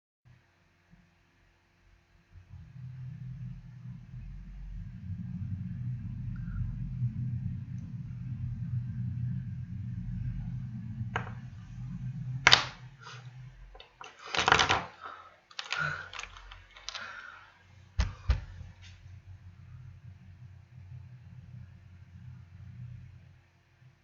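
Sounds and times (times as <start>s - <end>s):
low rumble: 1.8s - 14.1s, 15.7s - 24.0s
lipstick tubes clicking: 15.5s - 17.1s.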